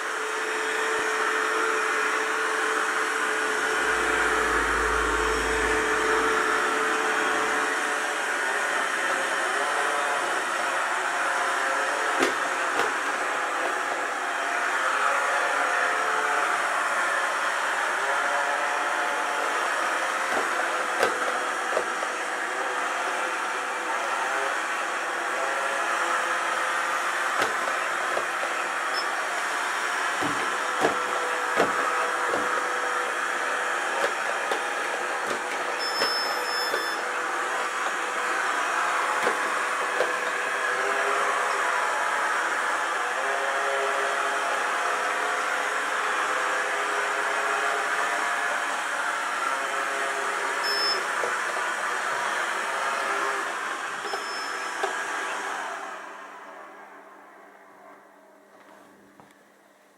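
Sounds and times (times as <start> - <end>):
robot vacuum humming: 0.0 - 14.4, 16.0 - 42.8.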